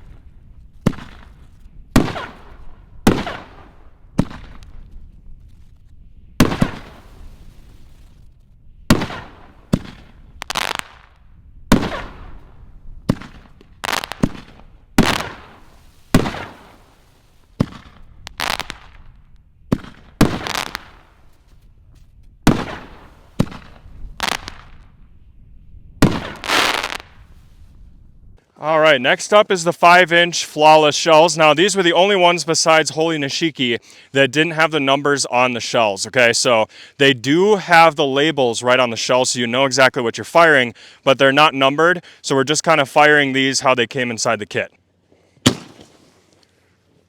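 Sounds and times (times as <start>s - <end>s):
firework shells booming: 0.8s - 4.9s, 6.4s - 7.6s, 8.8s - 21.3s, 22.4s - 24.9s, 26.0s - 27.2s, 45.4s - 46.1s.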